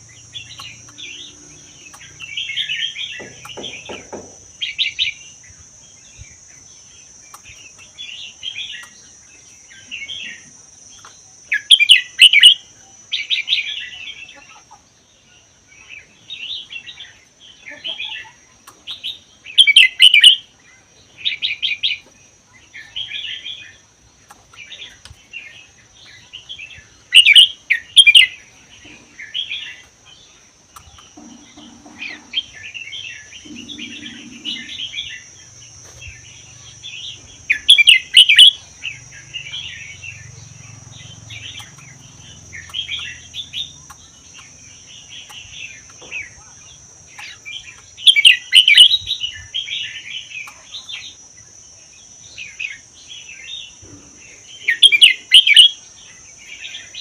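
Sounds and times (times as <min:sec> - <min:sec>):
bird singing: 0:00.0 - 0:57.0.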